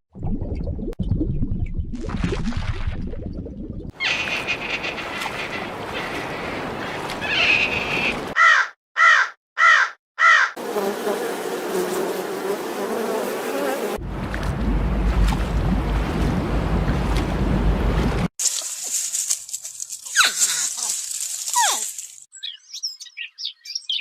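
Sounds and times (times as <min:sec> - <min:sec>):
rising and falling animal calls: 0:04.0 - 0:10.6
animal buzzing: 0:10.6 - 0:14.0.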